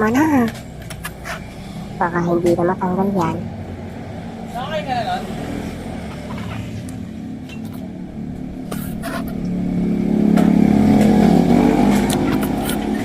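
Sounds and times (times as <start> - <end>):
motorcycle engine passing by: 3.5 - 13.0.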